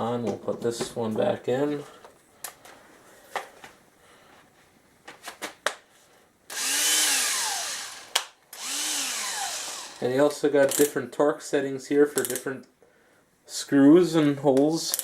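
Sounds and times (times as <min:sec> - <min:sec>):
cordless drill whirring: 0:06.5 - 0:10.1.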